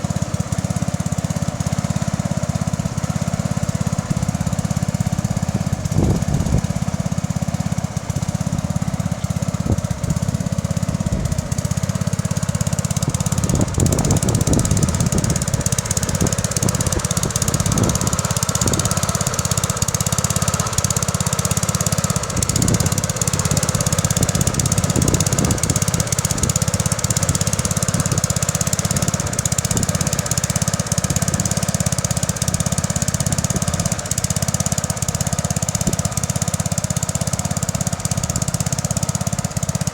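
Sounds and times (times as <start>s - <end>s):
garden tractor engine running: 0.0s - 39.9s.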